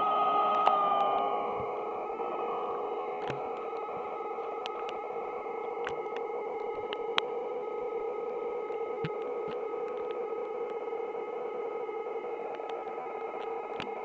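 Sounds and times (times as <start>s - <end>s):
electronic drone: 0.0s - 14.0s
faint clicks: 3.1s - 7.4s, 8.3s - 11.0s, 12.2s - 14.0s.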